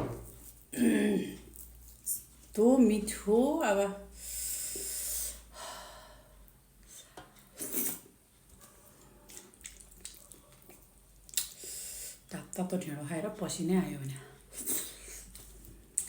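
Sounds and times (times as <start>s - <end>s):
mouth clicks of chewing: 9.3s - 11.6s.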